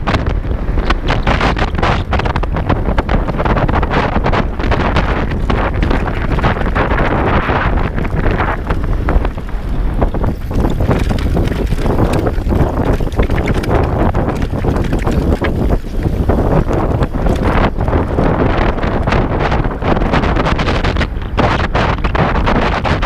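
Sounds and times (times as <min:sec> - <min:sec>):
knocks and clatters: 0:00.0 - 0:18.1
wind buffeting microphone: 0:00.0 - 0:23.0
motorcycle engine running: 0:02.4 - 0:19.4.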